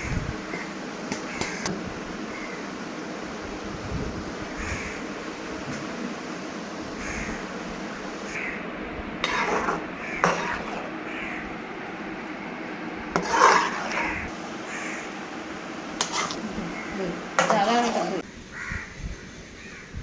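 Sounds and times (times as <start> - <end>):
crows cawing: 0.0 - 2.6, 4.6 - 5.2, 6.9 - 7.5, 8.2 - 8.7, 9.8 - 11.6, 13.8 - 15.2, 16.7 - 17.0, 18.5 - 20.0
steady background hiss: 0.0 - 20.0.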